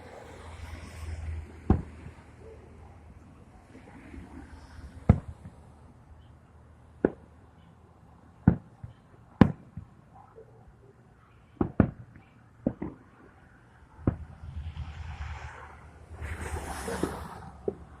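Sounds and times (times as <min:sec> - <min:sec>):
fireworks bursting with sharp bangs: 0:08.4 - 0:09.9, 0:11.6 - 0:13.0.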